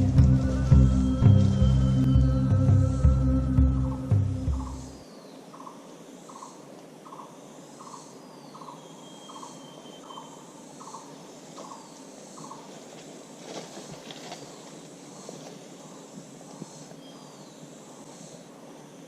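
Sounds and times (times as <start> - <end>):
bird hooting: 0.0 - 11.1
birds chirping: 0.0 - 19.0
rustles: 9.1 - 19.0.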